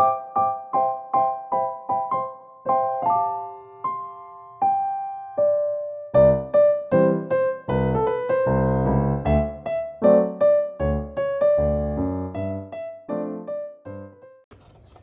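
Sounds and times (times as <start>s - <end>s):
electric piano chords: 0.0s - 14.4s.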